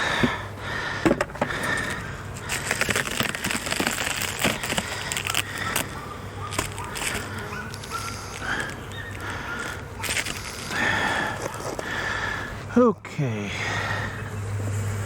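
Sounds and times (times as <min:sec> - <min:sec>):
propolis and wax crackling: 0:00.0 - 0:12.8
hive tool prying frame loose: 0:00.1 - 0:05.9.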